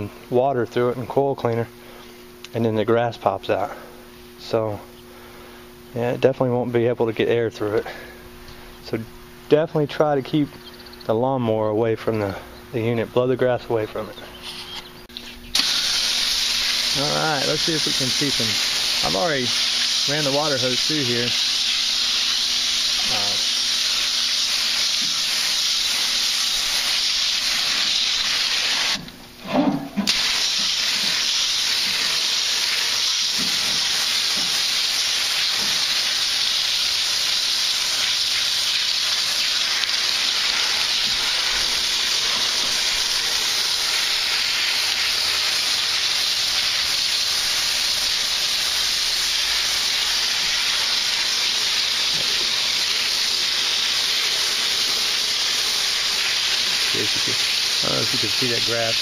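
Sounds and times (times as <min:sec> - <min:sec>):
hose spray hissing on metal: 0:15.5 - 0:29.1, 0:30.0 - 0:59.0.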